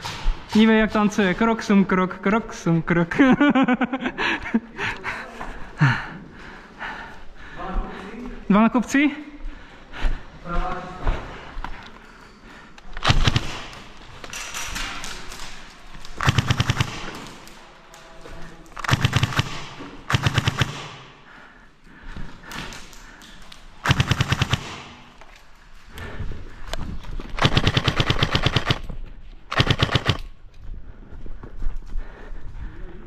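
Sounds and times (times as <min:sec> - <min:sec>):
airsoft guns firing bursts: 0:13.0 - 0:14.0, 0:14.7 - 0:17.6, 0:18.8 - 0:21.2, 0:23.8 - 0:25.2, 0:27.4 - 0:30.3.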